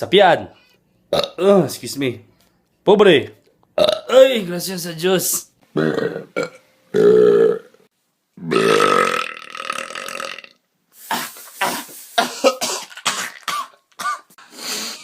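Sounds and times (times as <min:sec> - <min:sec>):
person burping loudly: 0:01.1 - 0:01.6, 0:03.8 - 0:04.1, 0:05.8 - 0:07.7, 0:08.4 - 0:10.6.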